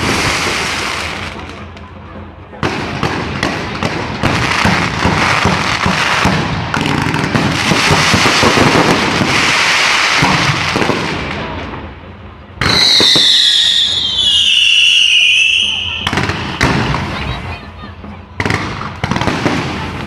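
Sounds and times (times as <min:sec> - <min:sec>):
fireworks crackling and popping: 0:00.0 - 0:20.0
whistling firework: 0:02.6 - 0:11.7, 0:12.6 - 0:17.8.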